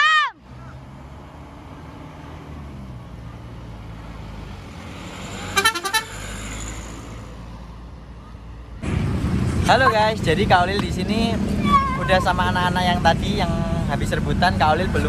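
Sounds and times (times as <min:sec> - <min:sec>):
vehicle engine rumbling: 0:00.0 - 0:15.0
bus multi-tone horn: 0:05.4 - 0:07.0, 0:11.5 - 0:12.5.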